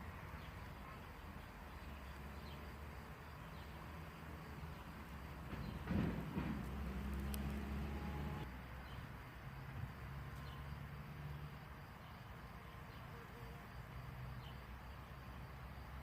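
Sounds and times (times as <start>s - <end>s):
birds: 0.0s - 9.1s, 10.3s - 13.6s
insects: 0.0s - 16.0s.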